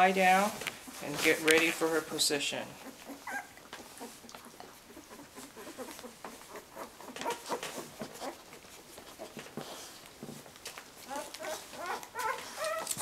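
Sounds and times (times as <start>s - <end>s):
puppies shuffling: 0.0s - 13.0s
puppies squeaking: 2.7s - 9.4s, 11.1s - 13.0s.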